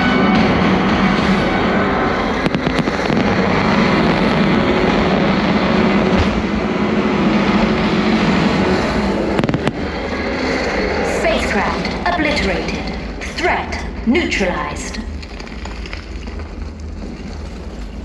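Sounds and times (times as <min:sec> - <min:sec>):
fireworks bangs: 0:00.0 - 0:10.8
fireworks rumble and crackle: 0:00.0 - 0:18.0.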